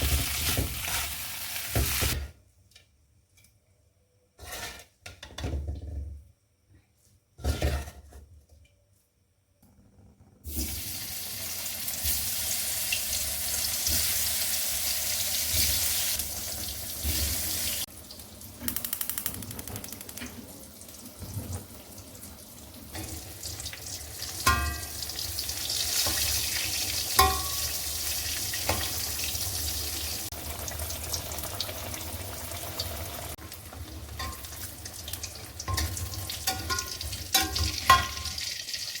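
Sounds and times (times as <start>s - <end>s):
dishes clinking: 24.4s - 25.0s, 27.2s - 27.8s, 34.2s - 34.5s, 35.7s - 38.4s.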